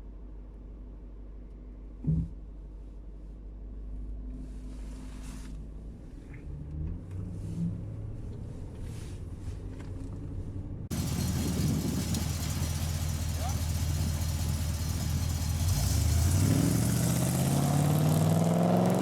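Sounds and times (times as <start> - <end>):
car engine idling: 10.9 - 18.0.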